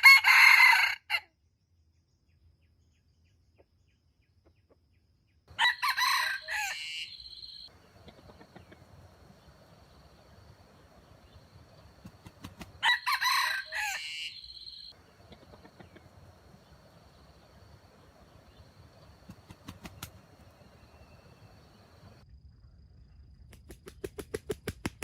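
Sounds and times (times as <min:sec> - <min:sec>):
rooster crowing: 0:00.0 - 0:01.2, 0:05.5 - 0:22.2.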